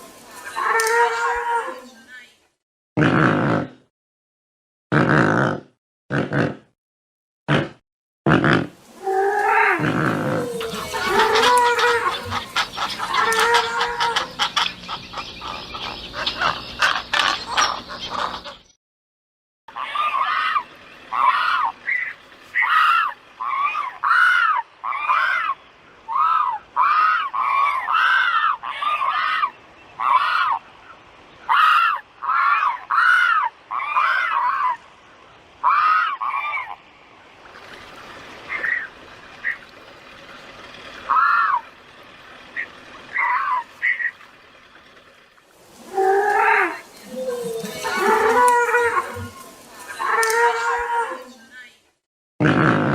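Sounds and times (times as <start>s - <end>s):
large waterbird calling: 8.8s - 18.8s, 19.7s - 51.5s.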